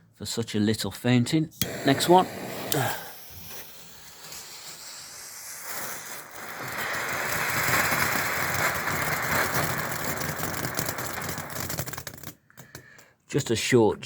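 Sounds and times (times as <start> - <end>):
firework fountain hissing: 1.6 - 12.3.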